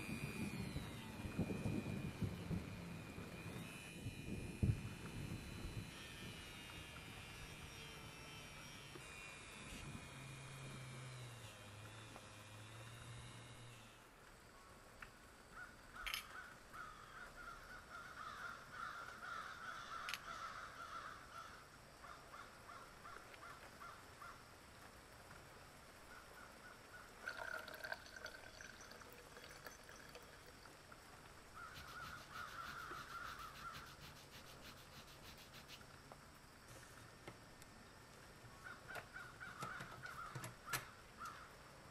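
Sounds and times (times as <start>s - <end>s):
low background noise: 0.0s - 41.9s
faint bird calls: 15.5s - 24.4s, 26.0s - 27.3s, 31.5s - 35.5s, 38.5s - 41.6s.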